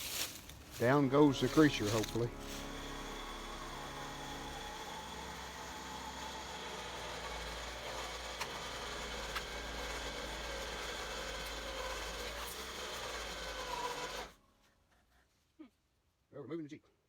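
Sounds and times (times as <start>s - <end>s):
winch motor running: 0.6s - 14.4s.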